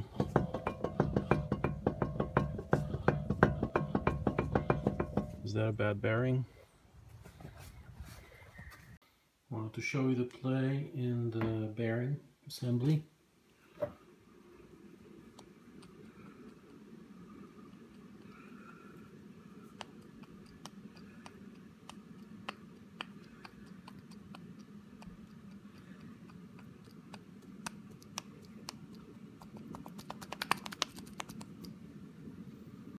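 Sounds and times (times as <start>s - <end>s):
wheel hub clicking: 0.0s - 5.6s.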